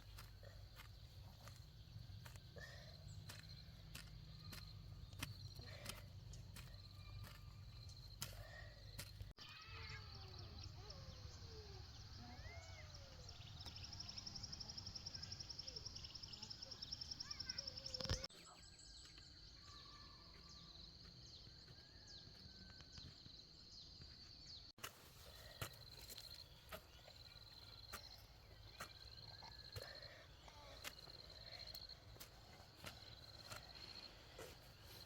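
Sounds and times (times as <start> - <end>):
bird chirps: 9.4 - 22.0.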